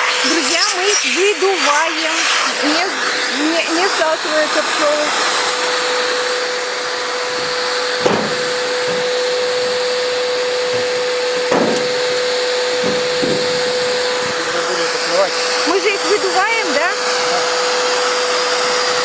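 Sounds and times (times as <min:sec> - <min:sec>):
vacuum cleaner blowing: 0:00.0 - 0:19.0
short knocks: 0:08.0 - 0:09.1, 0:10.7 - 0:12.1, 0:12.8 - 0:13.7.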